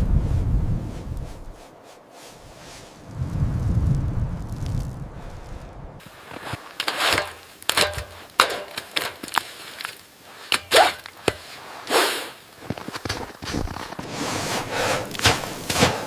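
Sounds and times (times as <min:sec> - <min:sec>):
crunching knocks and scrapes: 0:04.4 - 0:16.0.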